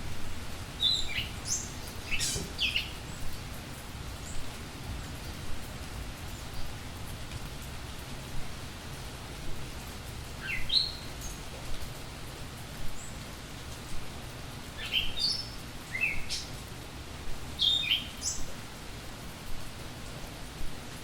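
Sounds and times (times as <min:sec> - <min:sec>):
rain falling: 0:00.0 - 0:21.0
songbird chirping: 0:00.8 - 0:03.4, 0:10.4 - 0:11.4, 0:14.8 - 0:16.6, 0:17.6 - 0:18.5.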